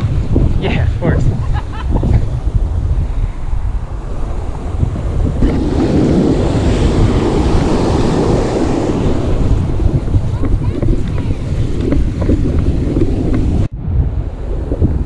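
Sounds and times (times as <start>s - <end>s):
wind buffeting microphone: 0.0s - 15.0s
ocean surf breaking: 3.4s - 15.0s.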